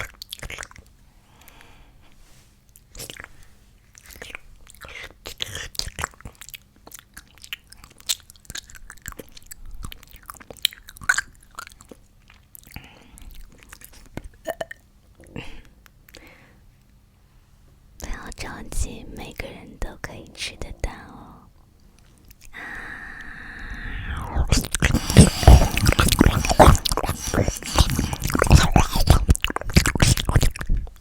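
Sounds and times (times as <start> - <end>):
wet mouth smacking and chomping: 0.0 - 1.6, 2.8 - 14.8, 24.1 - 31.0
breathy rush: 22.6 - 29.3.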